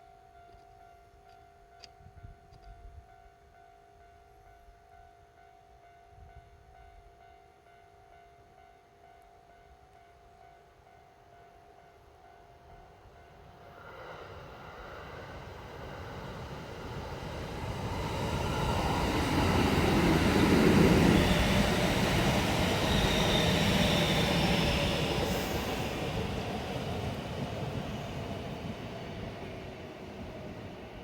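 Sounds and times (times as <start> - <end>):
electric train passing: 11.8 - 31.0
wheels rumbling on rails: 13.7 - 31.0
train motor whine: 16.9 - 27.9.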